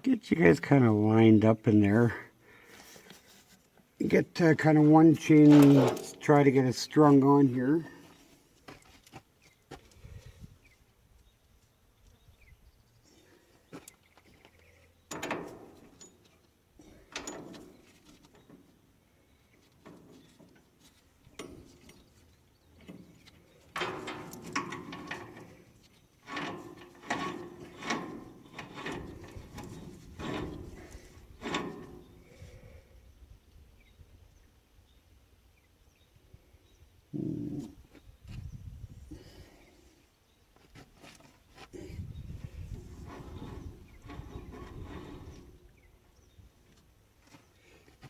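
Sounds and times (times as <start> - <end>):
steel roller chain clinking: 5.3 - 6.6, 26.2 - 32.3.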